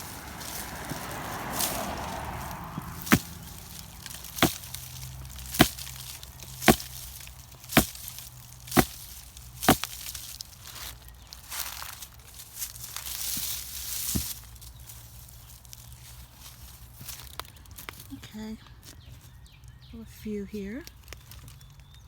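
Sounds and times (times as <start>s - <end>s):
garden tool chopping strokes: 0.0s - 15.0s.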